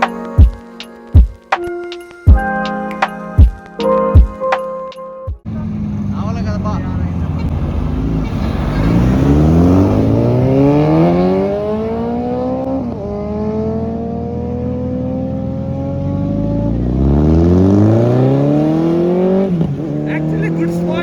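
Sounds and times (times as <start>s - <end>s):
motorcycle engine accelerating: 5.5s - 21.0s.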